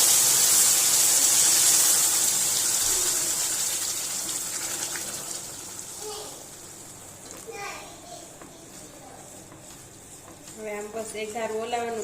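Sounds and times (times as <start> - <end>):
liquid hissing in hot pan: 0.0 - 8.1.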